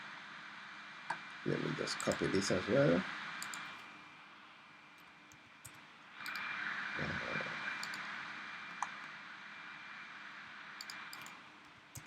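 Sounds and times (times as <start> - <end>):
steady background hiss: 0.0 - 12.0
computer mouse clicks: 2.0 - 2.3, 3.4 - 3.9, 5.0 - 6.6, 7.8 - 8.1, 8.7 - 9.2, 10.8 - 12.0.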